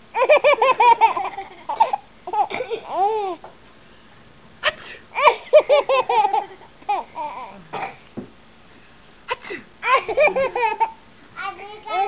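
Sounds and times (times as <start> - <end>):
baby giggling: 0.2 - 3.4, 4.6 - 7.6, 9.3 - 11.0.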